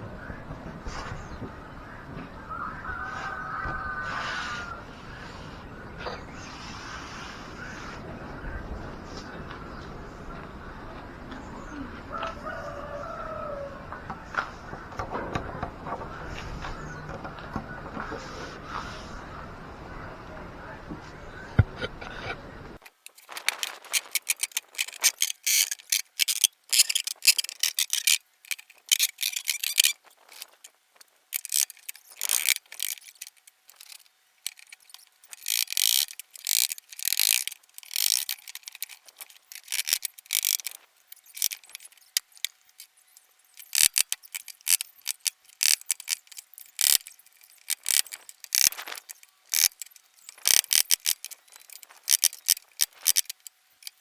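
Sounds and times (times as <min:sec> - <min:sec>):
high-pitched clicking and scraping: 0:21.8 - 0:54.0.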